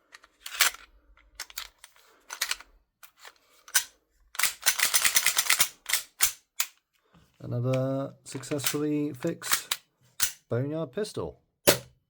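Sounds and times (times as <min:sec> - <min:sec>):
airsoft pistol clacks: 0:11.7 - 0:11.9
rapid airsoft pistol shots: 0:11.7 - 0:11.9.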